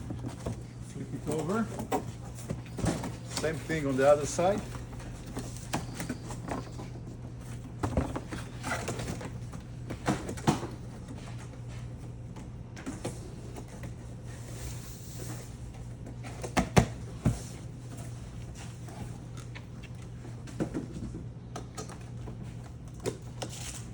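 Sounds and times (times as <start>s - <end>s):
steady low hum: 0.0s - 23.9s.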